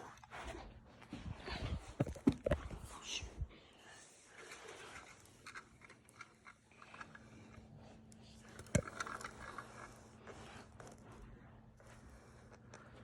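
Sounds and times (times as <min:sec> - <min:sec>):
faint steady hum: 0:00.0 - 0:13.0
plastic toy clicks and rattles: 0:04.5 - 0:07.6, 0:08.4 - 0:09.9.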